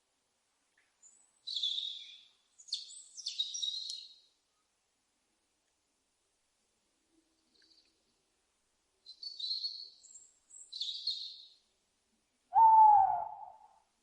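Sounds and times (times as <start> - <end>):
owl screeching: 12.5 - 13.7
owl hooting: 12.5 - 13.8.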